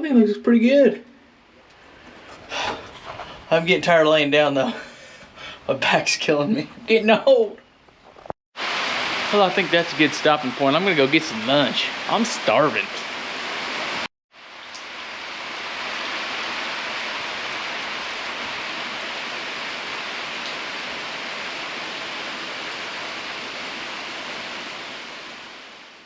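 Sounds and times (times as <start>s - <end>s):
heavy rain: 2.0s - 3.6s, 8.6s - 26.0s.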